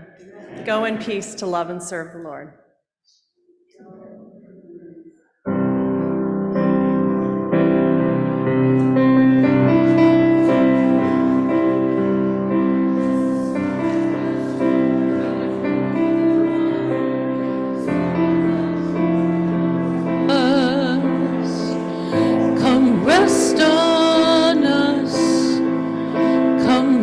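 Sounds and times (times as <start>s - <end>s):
keyboard playing sustained chords: 5.5s - 27.0s.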